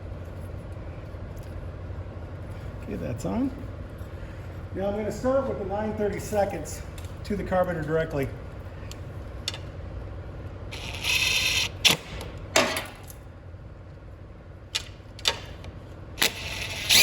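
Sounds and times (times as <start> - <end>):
ratchet wrench clicking: 16.2 - 17.0.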